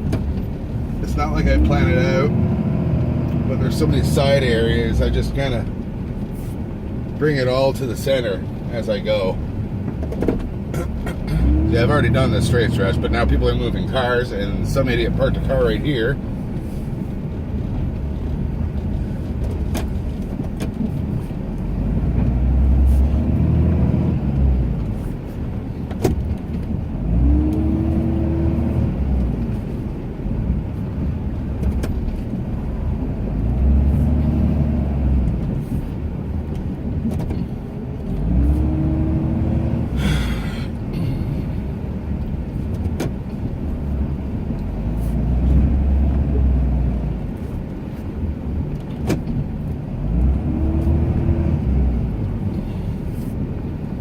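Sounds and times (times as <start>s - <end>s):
truck engine revving: 1.0s - 5.7s, 10.8s - 15.9s, 21.6s - 25.2s, 26.9s - 30.7s, 32.6s - 35.8s, 38.1s - 41.7s, 49.9s - 52.8s.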